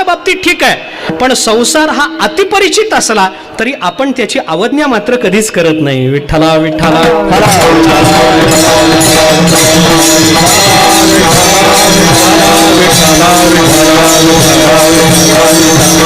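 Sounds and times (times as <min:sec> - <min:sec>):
devotional music with held notes: 0:06.7 - 0:16.0
jingling metal hand percussion: 0:06.8 - 0:16.0.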